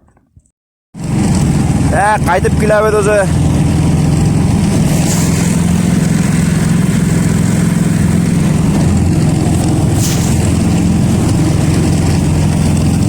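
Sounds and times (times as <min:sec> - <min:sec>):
vehicle engine droning: 0:01.0 - 0:13.0
short crackles: 0:03.4 - 0:13.0.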